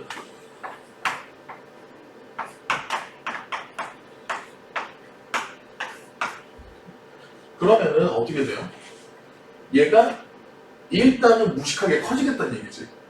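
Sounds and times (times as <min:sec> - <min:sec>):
handwriting strokes: 0:02.4 - 0:06.4.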